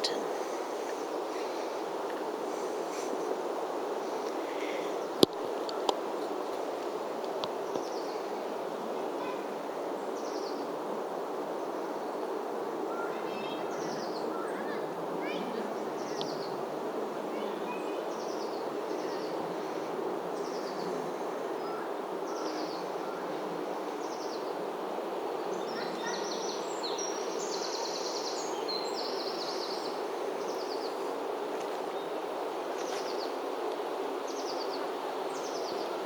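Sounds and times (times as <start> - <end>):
songbirds singing: 0.0 - 3.4, 7.4 - 8.5, 9.2 - 10.8, 12.9 - 16.6, 17.3 - 24.6, 25.4 - 36.0
steady background noise: 0.0 - 36.0.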